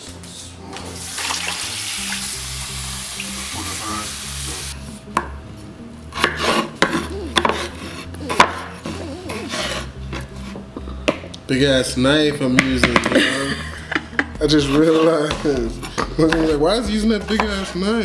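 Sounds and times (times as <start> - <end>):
steady hiss: 0.3 - 4.8
knife striking cutting board: 6.1 - 11.3, 14.0 - 17.8.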